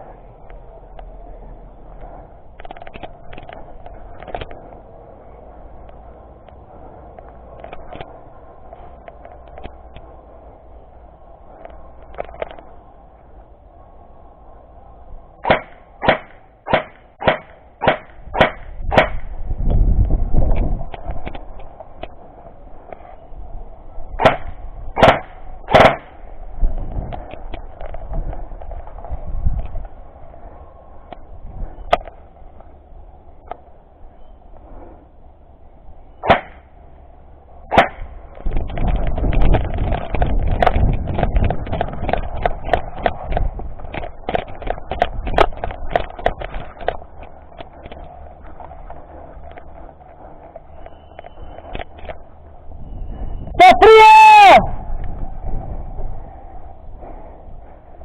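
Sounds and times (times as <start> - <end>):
low rumble of wind on microphone: 0.0 - 58.0
airsoft gun shots: 15.4 - 19.3, 24.2 - 26.2, 36.2 - 36.6, 37.7 - 38.1
running footsteps: 38.0 - 52.8.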